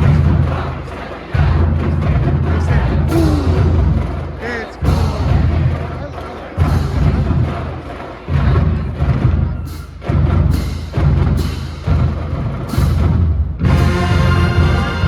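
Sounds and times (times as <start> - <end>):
horns playing sustained notes: 13.6 - 15.0.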